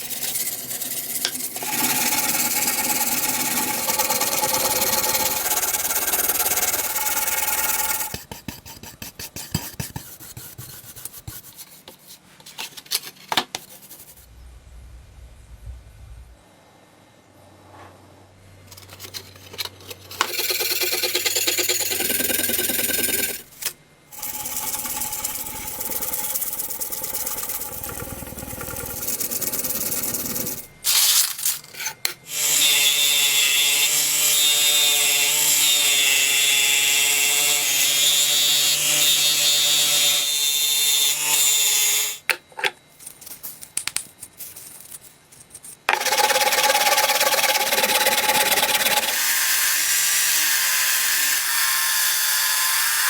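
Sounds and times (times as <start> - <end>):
power tool motor whine: 24.1 - 30.9.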